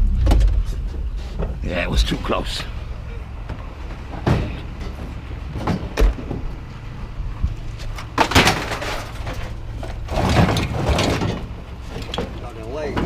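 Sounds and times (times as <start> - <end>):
vehicle engine idling: 0.0 - 13.0
scrap metal clanking and scraping: 2.7 - 13.0.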